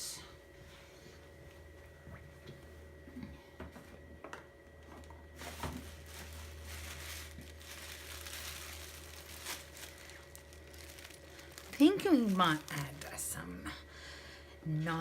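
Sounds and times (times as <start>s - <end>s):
crinkling and rustling materials: 4.8s - 13.4s.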